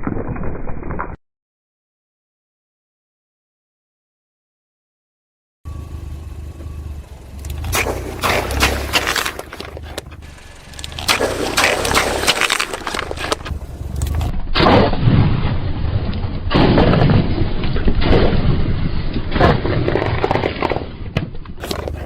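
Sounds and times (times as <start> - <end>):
plastic toy vehicles clattering: 7.4 - 14.3, 19.4 - 22.0.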